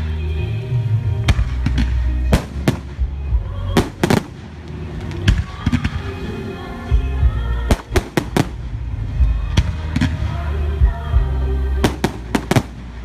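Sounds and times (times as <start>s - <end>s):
loud background music: 0.0s - 13.0s
fireworks bangs: 3.8s - 6.5s, 11.8s - 13.0s.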